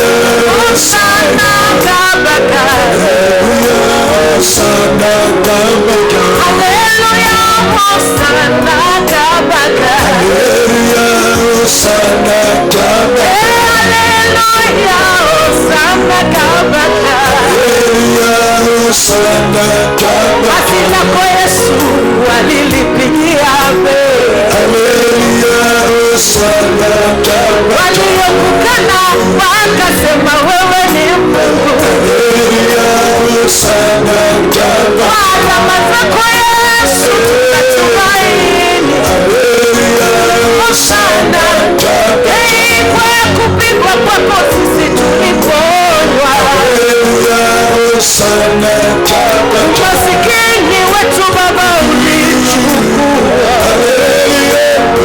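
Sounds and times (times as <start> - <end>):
instrumental backing music: 0.0 - 55.0
worship singing: 0.0 - 55.0.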